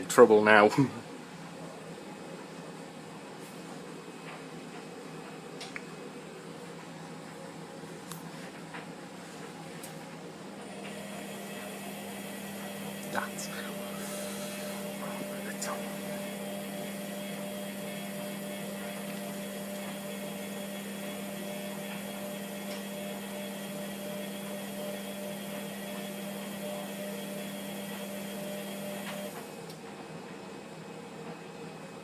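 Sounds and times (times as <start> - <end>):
washing machine motor hum: 0.0 - 32.0.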